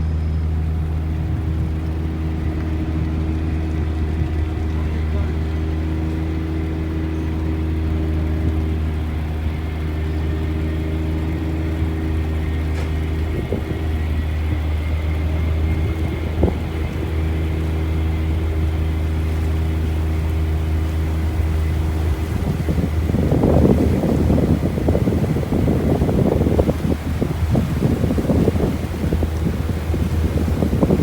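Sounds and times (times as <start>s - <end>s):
boat engine droning: 0.0s - 31.0s
brief bumps: 12.7s - 13.7s.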